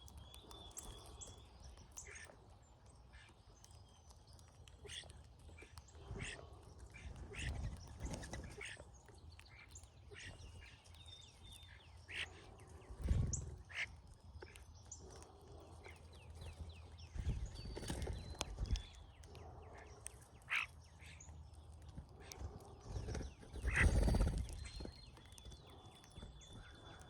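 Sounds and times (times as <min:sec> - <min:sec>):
birds calling squeaky calls: 0:19.8 - 0:21.3
birds whistling and chirping: 0:22.9 - 0:27.0.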